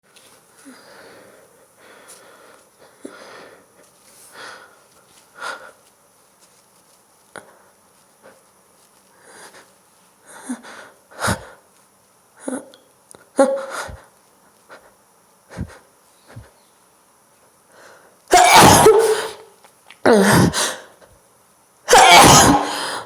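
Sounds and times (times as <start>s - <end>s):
woman sniffing and gasping: 18.3s - 19.4s, 20.1s - 21.0s, 21.9s - 23.0s
sudden loud sneeze burst: 18.3s - 19.5s, 21.9s - 23.0s.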